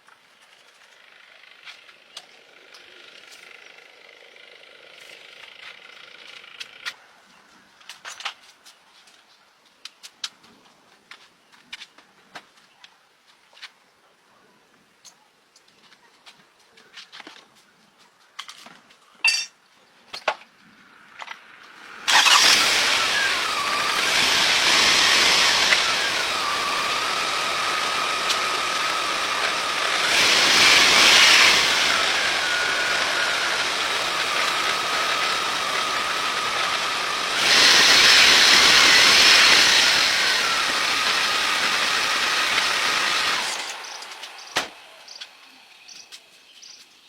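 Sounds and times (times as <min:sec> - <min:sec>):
vehicle engine whining: 0:21.3 - 0:46.2.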